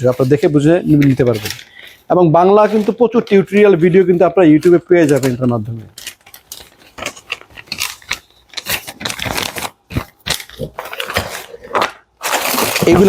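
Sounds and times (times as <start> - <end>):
packaging crinkling: 0.0 - 13.0.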